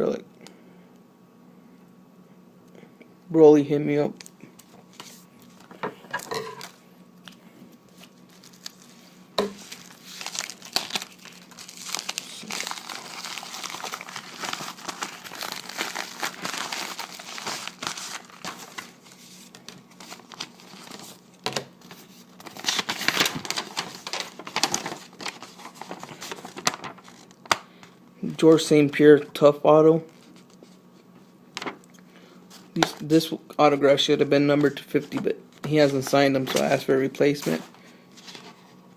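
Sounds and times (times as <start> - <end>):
packaging crinkling: 4.2 - 27.6.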